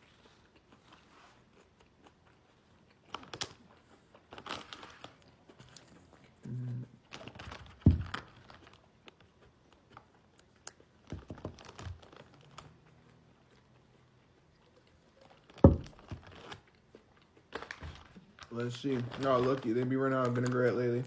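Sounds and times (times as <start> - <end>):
chewing and crunching: 0.0 - 21.0
packaging crinkling: 4.3 - 5.2, 11.0 - 12.8, 15.2 - 16.8, 17.5 - 21.0.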